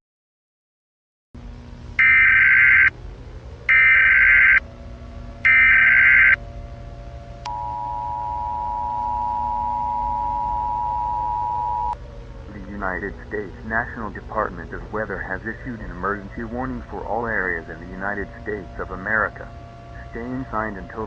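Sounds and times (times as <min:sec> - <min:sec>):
steady dual tone: 0:01.4 - 0:21.0
harsh digital data bursts: 0:02.0 - 0:02.9, 0:03.7 - 0:04.6, 0:05.5 - 0:06.4.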